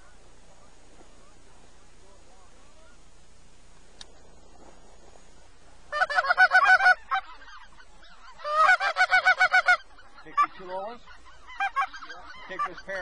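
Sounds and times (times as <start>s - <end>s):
goose honks and clucks: 5.9s - 13.0s.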